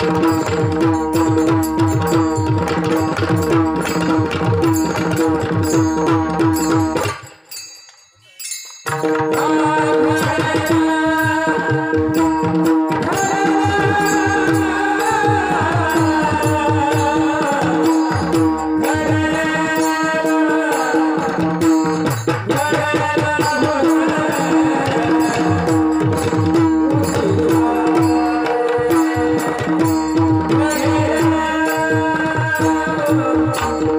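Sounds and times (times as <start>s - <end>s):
man singing: 8.9s - 33.9s.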